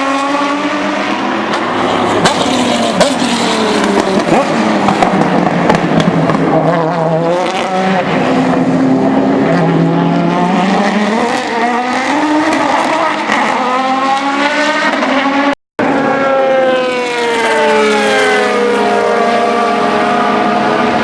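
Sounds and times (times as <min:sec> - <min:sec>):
race car engine at full throttle: 0:00.0 - 0:21.0.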